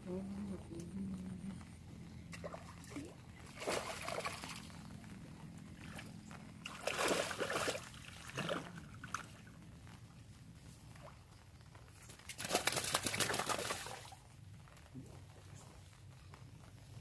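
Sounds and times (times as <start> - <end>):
water splashing: 2.3 - 4.8, 5.8 - 9.6, 12.3 - 14.2.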